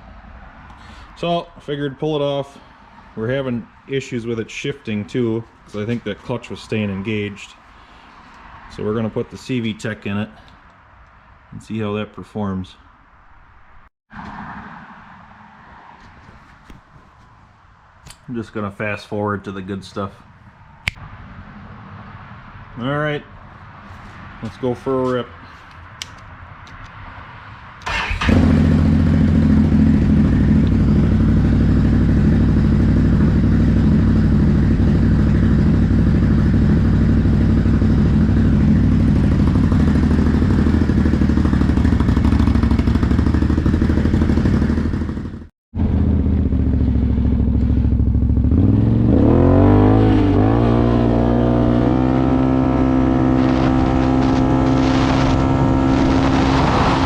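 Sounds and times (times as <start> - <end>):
atv engine starting and idling: 27.8 - 48.8
atv engine revving and pulling away: 27.8 - 57.0.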